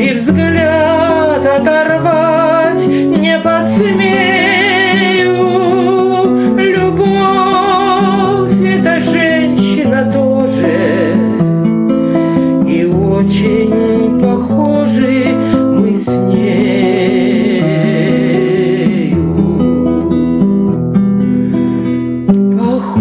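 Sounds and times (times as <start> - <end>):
woman singing with vibrato: 0.0 - 11.4, 12.7 - 20.2, 22.5 - 23.0
guitar accompaniment: 0.0 - 23.0.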